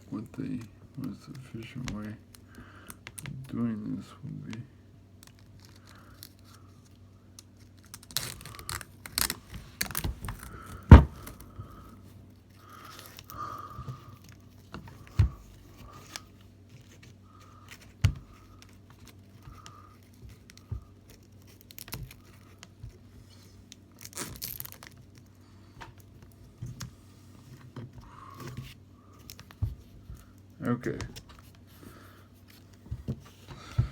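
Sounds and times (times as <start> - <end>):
velcro ripping open: 7.6 - 10.5, 23.7 - 25.3.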